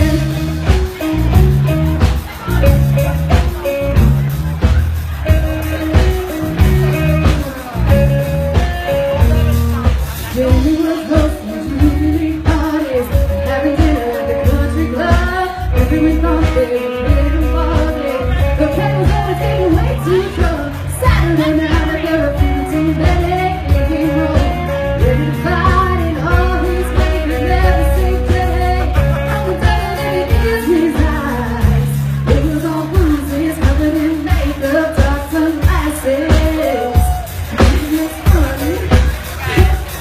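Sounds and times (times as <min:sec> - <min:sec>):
woman singing: 0:00.0 - 0:01.6, 0:10.2 - 0:40.0
band playing country-pop: 0:00.0 - 0:40.0.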